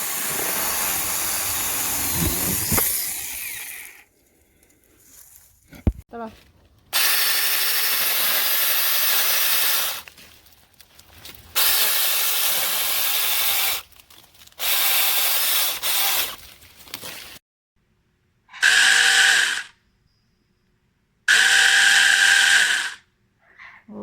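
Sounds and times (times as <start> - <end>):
electric chainsaw cutting wood: 0.0 - 4.0, 7.0 - 10.1, 11.6 - 13.8, 14.6 - 16.4, 18.6 - 19.7, 21.3 - 23.0.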